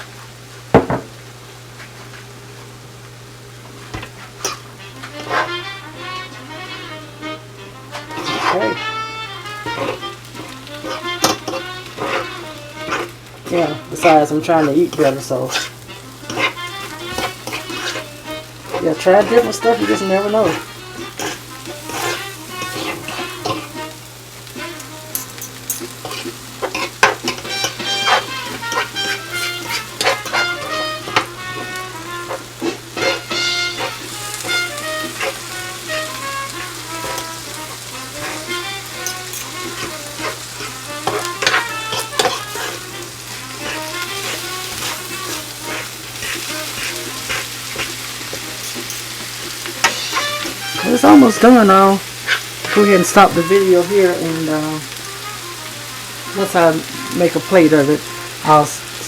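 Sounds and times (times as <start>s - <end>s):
food sizzling in a pan: 0.0s - 59.0s
utensil scraping and tapping pan: 3.9s - 5.6s, 8.0s - 8.9s, 9.6s - 23.8s, 24.6s - 51.6s.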